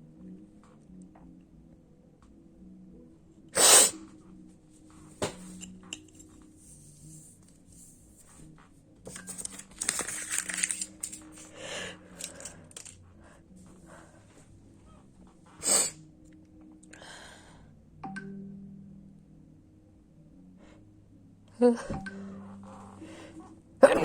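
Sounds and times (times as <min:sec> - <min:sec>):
person sneezing: 0:03.6 - 0:04.0
clicking and rustling: 0:09.1 - 0:11.5, 0:12.1 - 0:13.0.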